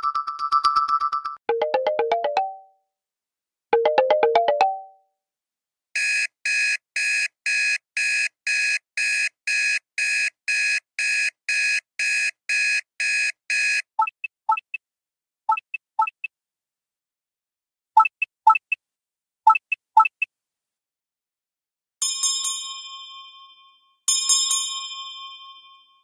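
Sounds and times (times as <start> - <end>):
electronic alarm beeping: 6.0 - 14.8, 15.5 - 16.3.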